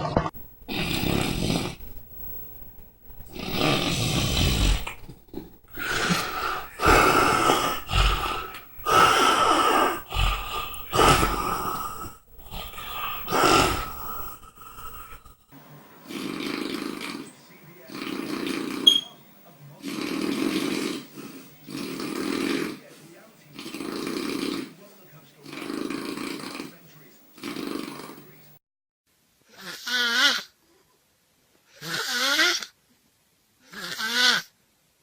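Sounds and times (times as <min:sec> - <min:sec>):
loud snoring with whistling: 0:00.7 - 0:02.5, 0:03.2 - 0:05.0, 0:05.7 - 0:15.2, 0:16.0 - 0:19.2, 0:19.8 - 0:22.8, 0:23.5 - 0:24.7, 0:25.4 - 0:26.8, 0:27.4 - 0:28.3.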